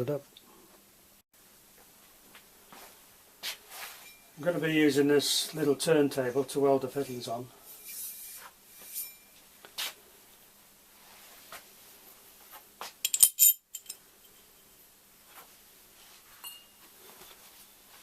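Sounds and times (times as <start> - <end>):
metal pipe fittings clinking: 13.0 - 14.5.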